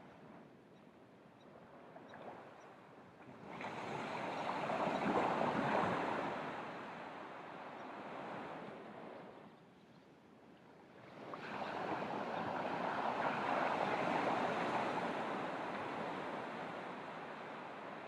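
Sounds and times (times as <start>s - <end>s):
ocean waves breaking on beach: 3.3s - 8.9s, 11.0s - 18.0s.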